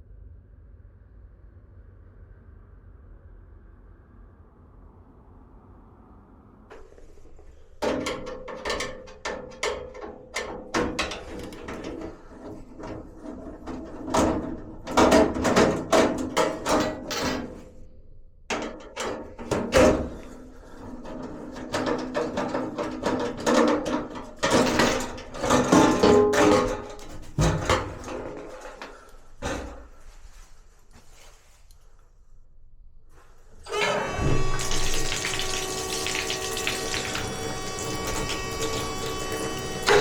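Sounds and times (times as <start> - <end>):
hardware clicking and rattling: 6.7 - 17.7, 18.5 - 29.9.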